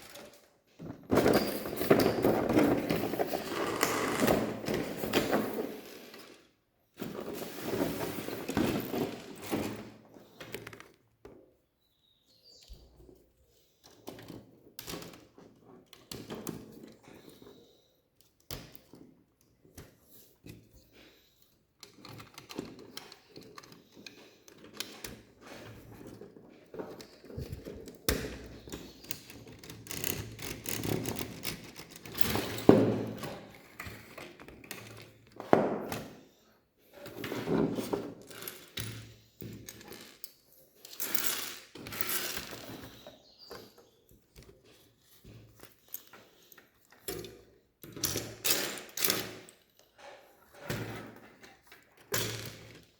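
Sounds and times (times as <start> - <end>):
rummaging and rustling: 0.0 - 11.0.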